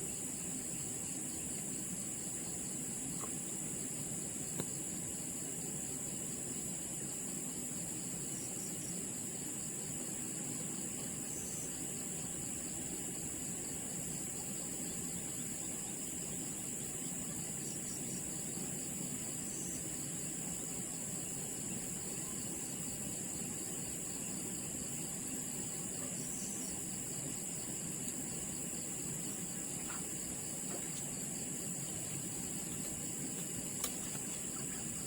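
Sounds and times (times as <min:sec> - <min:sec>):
insects chirring: 0:00.0 - 0:35.0.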